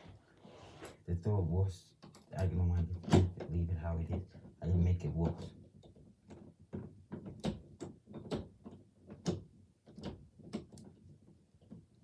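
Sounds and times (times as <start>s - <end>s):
wooden door knocks and clicks: 3.0s - 4.3s, 5.2s - 10.9s.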